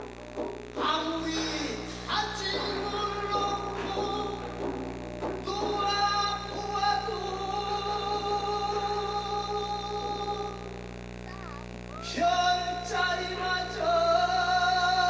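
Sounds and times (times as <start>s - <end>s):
sharp percussion strikes: 0.0s - 7.7s.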